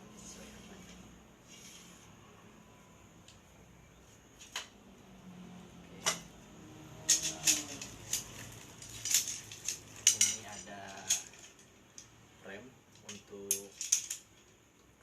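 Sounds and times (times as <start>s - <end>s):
metal items clinking: 7.0s - 11.7s, 13.0s - 14.5s.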